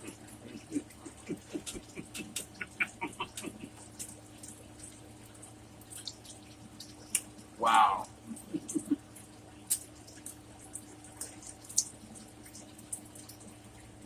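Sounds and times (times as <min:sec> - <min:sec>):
mouth clicks: 0:00.0 - 0:04.1
crunchy chewing: 0:00.0 - 0:04.6.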